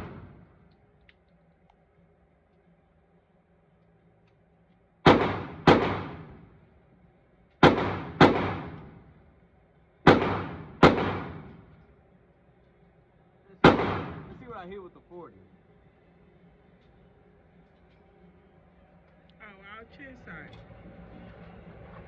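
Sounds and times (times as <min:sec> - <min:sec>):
pistol shots echoing: 0:00.0 - 0:00.4, 0:05.0 - 0:06.5, 0:07.6 - 0:09.1, 0:10.0 - 0:11.7, 0:13.6 - 0:14.6.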